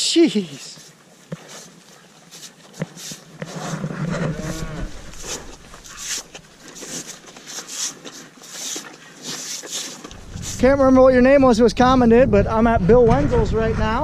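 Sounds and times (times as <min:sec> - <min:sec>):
cattle rustling and knocking: 0:00.8 - 0:11.2
cow mooing: 0:04.0 - 0:05.5.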